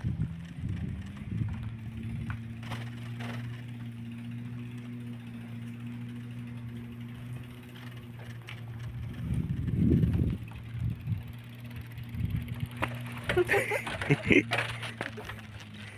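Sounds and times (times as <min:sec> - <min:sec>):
motorbike hum: 0:00.0 - 0:15.9.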